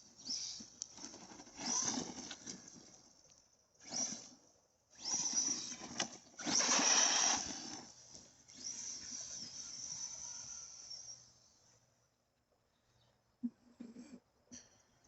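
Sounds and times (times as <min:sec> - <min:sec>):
electric motor whining: 0:00.0 - 0:03.0, 0:03.8 - 0:11.7.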